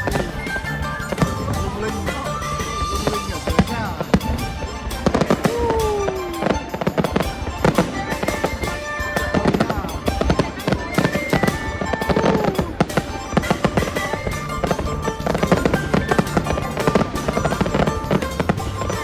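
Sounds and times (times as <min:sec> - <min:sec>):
music playing: 0:00.0 - 0:19.0
fireworks bangs and crackles: 0:01.1 - 0:15.8.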